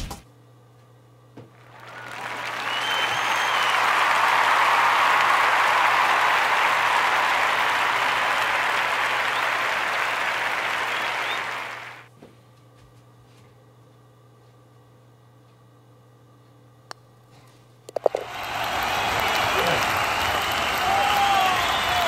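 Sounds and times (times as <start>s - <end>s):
faint electrical hum: 0.0s - 22.0s
crowd applause: 1.6s - 12.1s, 18.0s - 22.0s
whistle: 1.7s - 4.1s, 9.2s - 9.9s, 10.7s - 12.0s, 18.1s - 22.0s.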